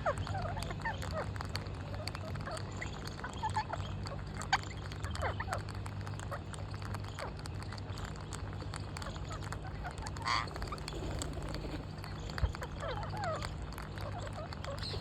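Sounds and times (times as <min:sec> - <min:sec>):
birds squawking and chirping: 0:09.0 - 0:15.0.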